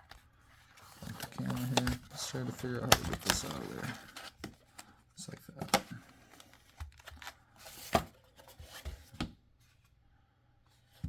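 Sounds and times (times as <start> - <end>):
cardboard packaging clicks and taps: 1.1 - 2.1, 2.8 - 4.9.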